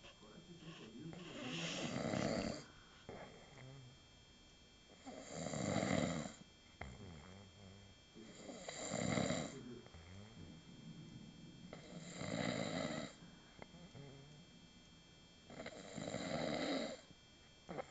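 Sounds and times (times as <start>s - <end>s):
soft breathing: 0.0s - 4.0s, 12.9s - 15.0s
loud snoring: 0.6s - 4.0s, 5.0s - 10.3s, 11.7s - 14.3s, 15.5s - 17.1s, 17.7s - 17.9s.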